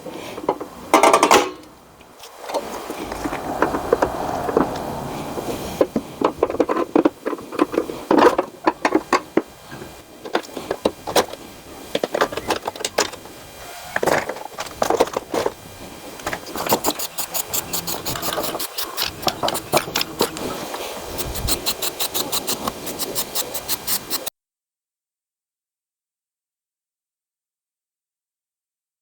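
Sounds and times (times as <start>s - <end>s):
rapid run of clicks: 16.3s - 20.6s, 21.2s - 24.3s.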